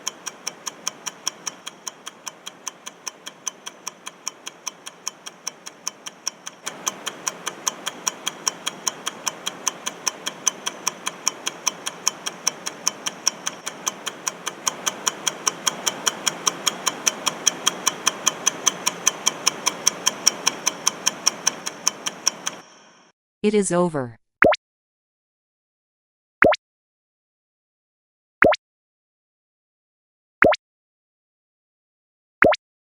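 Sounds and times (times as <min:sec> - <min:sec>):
clock ticking: 0:00.0 - 0:22.9
steady hiss: 0:00.0 - 0:23.0.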